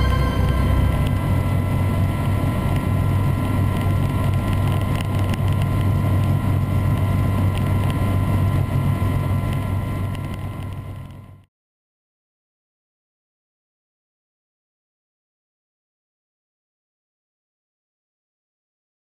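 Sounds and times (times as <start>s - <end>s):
high whine: 0.0s - 2.5s.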